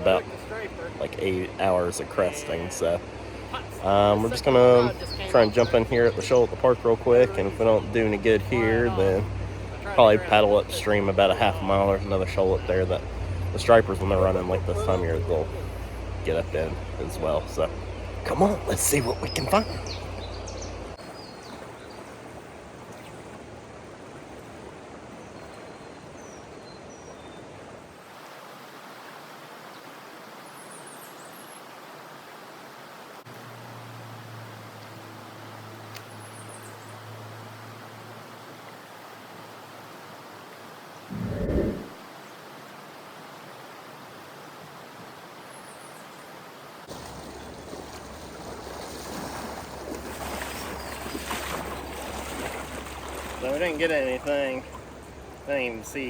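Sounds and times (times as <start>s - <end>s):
river water rushing over shoal: 0.0s - 56.0s
river water rushing: 27.8s - 30.6s, 31.6s - 56.0s.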